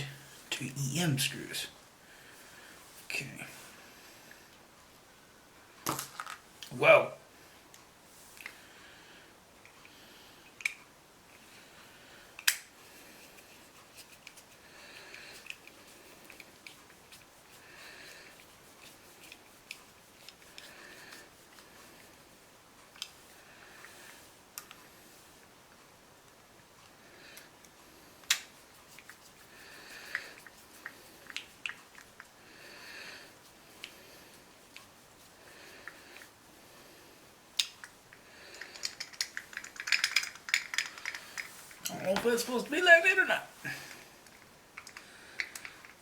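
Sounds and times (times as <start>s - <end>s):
plastic parts clicking: 38.5s - 41.5s, 44.2s - 46.0s.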